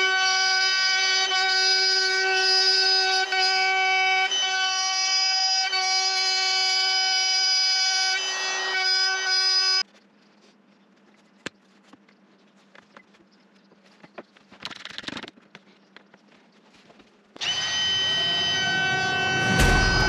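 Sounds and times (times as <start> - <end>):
music with sustained tones: 17.4 - 20.0.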